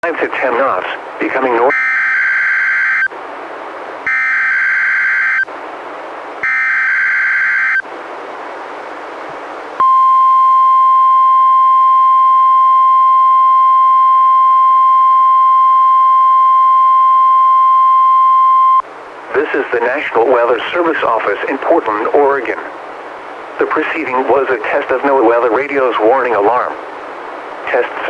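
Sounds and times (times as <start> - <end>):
radio hiss: 0.0 - 3.3, 19.2 - 28.0
rasping data screech: 1.7 - 3.1, 4.1 - 5.5, 6.4 - 7.8
steady warning alarm tone: 1.7 - 3.1, 4.1 - 5.5, 6.4 - 7.8.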